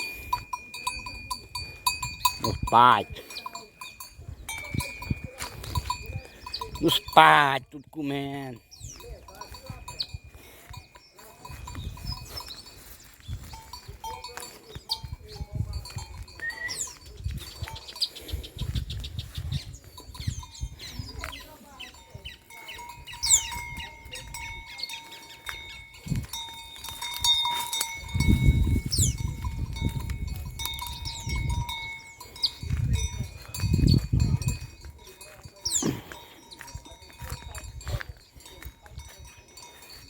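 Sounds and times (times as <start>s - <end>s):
songbirds chirping and whistling: 3.2s - 6.8s, 8.6s - 29.8s, 30.6s - 36.7s.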